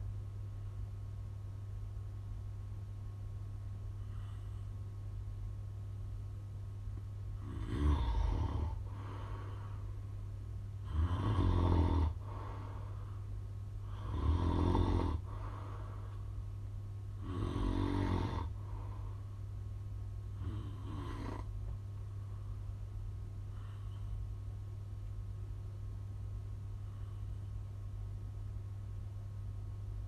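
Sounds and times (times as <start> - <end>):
steady low hum: 0.0 - 30.0
man snoring: 7.4 - 9.1, 10.8 - 12.5, 13.9 - 15.4, 17.2 - 18.6, 20.4 - 21.5.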